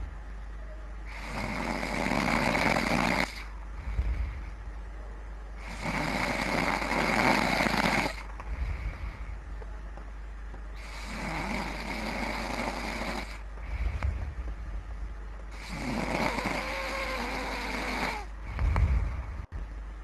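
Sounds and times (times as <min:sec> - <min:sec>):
person snoring heavily: 0:01.1 - 0:04.5, 0:05.6 - 0:09.3, 0:10.8 - 0:14.3, 0:15.5 - 0:19.4.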